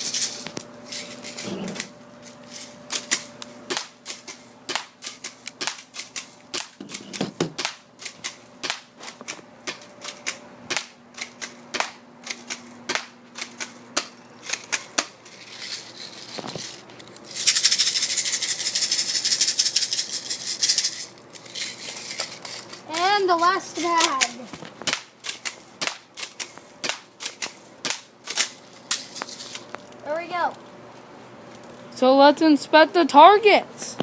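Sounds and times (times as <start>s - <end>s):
airsoft gun firing: 3.7s - 5.9s.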